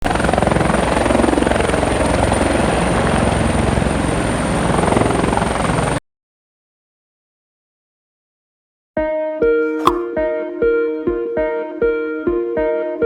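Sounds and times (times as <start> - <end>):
helicopter rotor chopping: 0.0 - 6.0.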